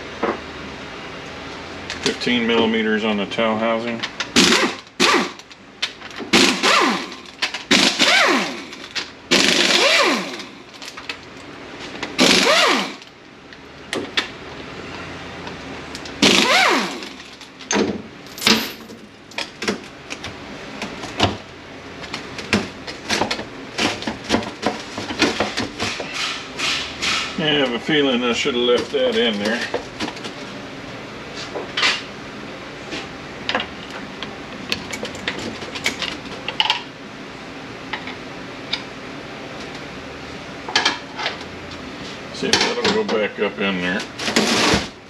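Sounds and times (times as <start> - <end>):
power tool motor whine: 6.4 - 10.6, 12.2 - 13.1, 16.2 - 17.4.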